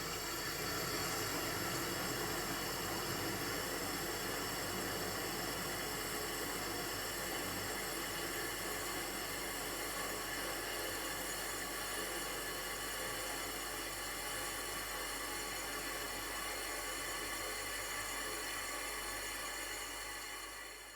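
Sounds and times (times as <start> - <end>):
compressor whining and hissing: 0.0 - 8.6.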